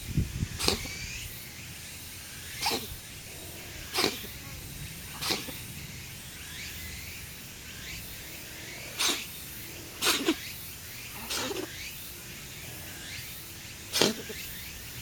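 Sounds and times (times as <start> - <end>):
cat sneezing: 0.6 - 1.0, 2.6 - 3.0, 3.9 - 4.4, 5.1 - 5.6, 8.9 - 9.3, 10.0 - 10.4, 11.2 - 11.8, 13.9 - 14.4.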